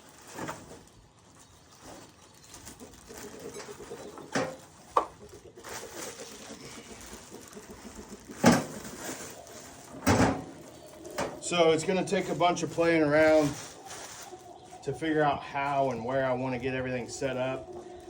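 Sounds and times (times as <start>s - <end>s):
bird cooing: 2.6s - 18.0s.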